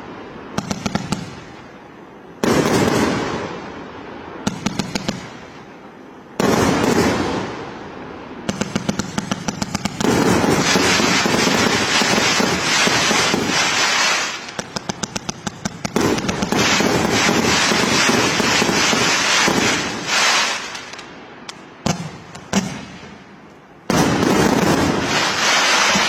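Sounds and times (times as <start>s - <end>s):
fireworks crackling pops: 0.5s - 1.7s, 4.4s - 5.7s, 8.4s - 26.0s.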